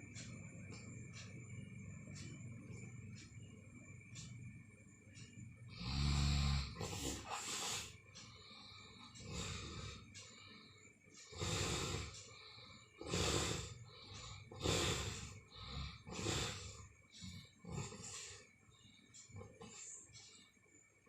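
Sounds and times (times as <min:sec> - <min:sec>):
heavy snoring: 0:05.7 - 0:07.9, 0:09.2 - 0:10.0, 0:11.3 - 0:12.2, 0:13.0 - 0:18.4.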